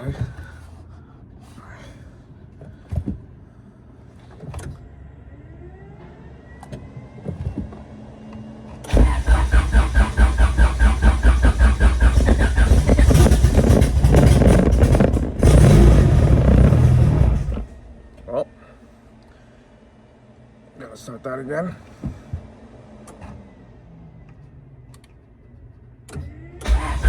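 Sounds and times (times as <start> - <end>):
engine cranking on starter: 8.8 - 18.1, 26.1 - 27.0.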